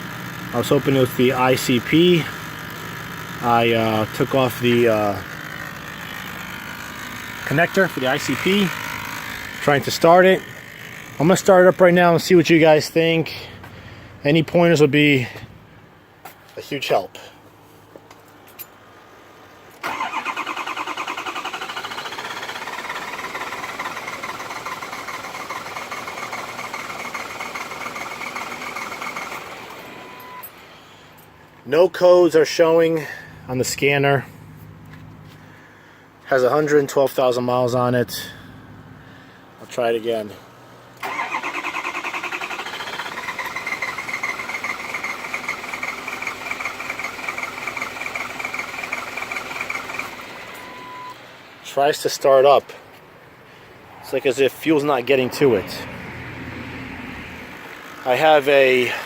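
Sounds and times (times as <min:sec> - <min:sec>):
diesel engine cranking on starter: 0:00.0 - 0:15.8, 0:19.7 - 0:31.3, 0:40.9 - 0:51.2.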